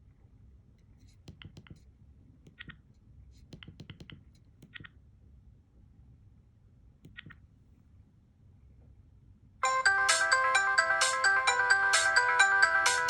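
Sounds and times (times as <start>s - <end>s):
phone keypad buttons clicking: 7.1s - 7.4s.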